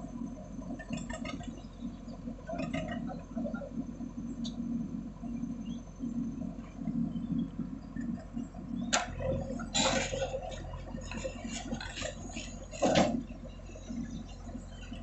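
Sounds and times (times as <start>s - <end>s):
diesel engine running: 0.0s - 15.0s
soil scraping and rushing: 8.9s - 15.0s.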